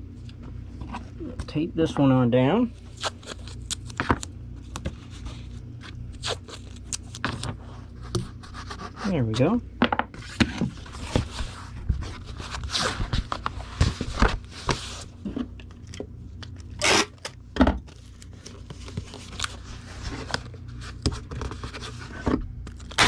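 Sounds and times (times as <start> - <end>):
cardboard rustling and scraping: 2.8 - 9.2, 10.1 - 16.0, 17.9 - 23.0
tape tearing: 2.9 - 4.3, 6.1 - 7.5, 16.5 - 17.4, 22.7 - 23.0.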